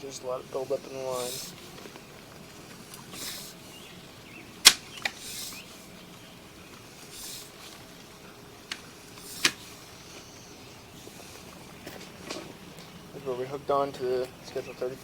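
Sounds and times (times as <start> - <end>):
faint hiss: 0.0 - 15.0
sharp clicks: 8.7 - 9.7.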